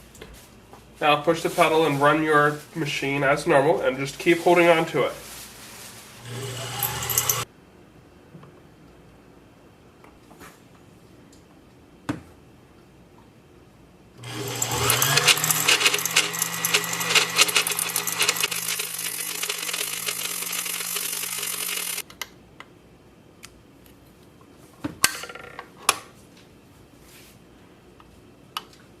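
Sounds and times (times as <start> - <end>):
sewing machine motor running: 6.2 - 7.4, 14.2 - 22.0.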